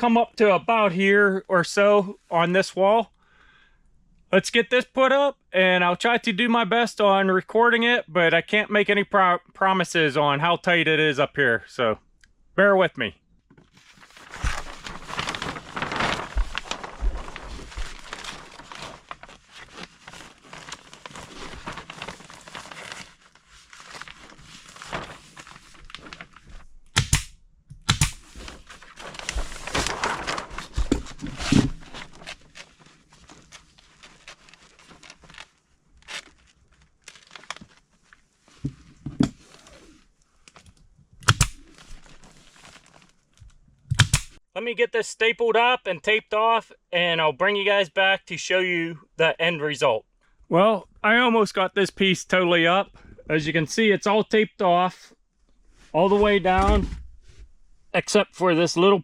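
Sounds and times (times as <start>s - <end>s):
plastic sheeting crinkling: 13.7s - 26.7s, 28.2s - 38.7s, 41.5s - 43.4s
sharp clicks: 26.9s - 28.2s, 43.9s - 44.4s.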